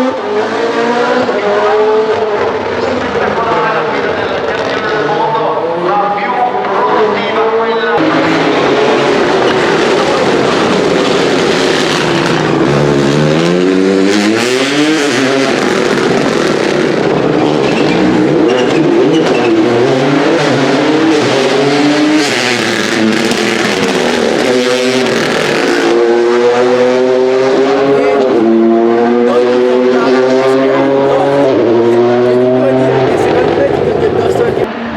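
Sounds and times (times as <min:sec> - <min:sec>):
rally car engine accelerating: 0:00.0 - 0:34.9.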